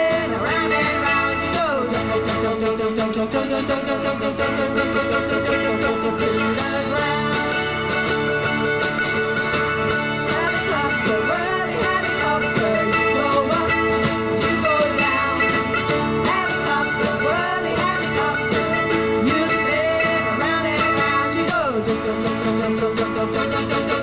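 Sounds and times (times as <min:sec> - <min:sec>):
guitar: 0:00.0 - 0:24.0.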